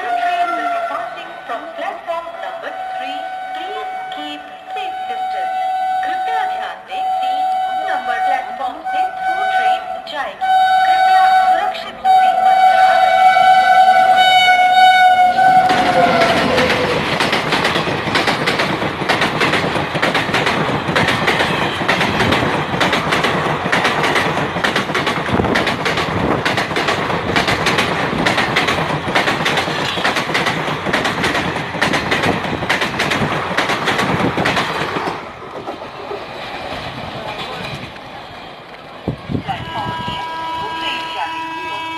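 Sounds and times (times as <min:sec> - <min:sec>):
train horn: 0:00.0 - 0:01.7, 0:02.6 - 0:17.1, 0:21.4 - 0:22.1, 0:39.5 - 0:41.9
train wheels clattering: 0:15.4 - 0:39.3.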